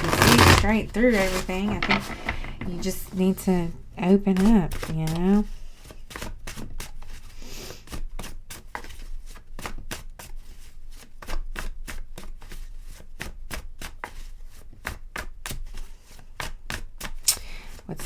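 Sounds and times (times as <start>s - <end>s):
cards being shuffled: 0.0s - 7.3s.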